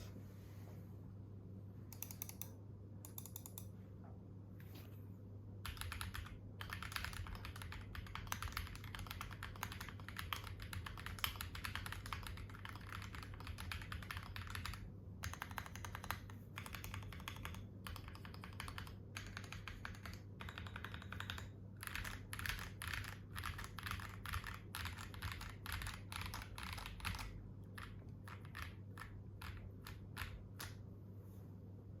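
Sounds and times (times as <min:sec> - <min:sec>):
low steady hum: 0:00.0 - 0:32.0
typing on mechanical keyboard: 0:01.9 - 0:02.5, 0:03.1 - 0:03.7, 0:05.6 - 0:30.8.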